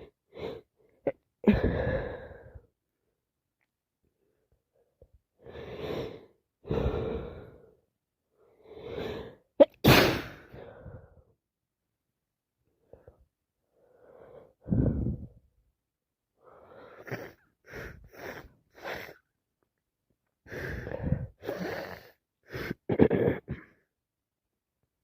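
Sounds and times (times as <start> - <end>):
woman sneezing: 9.6 - 10.5.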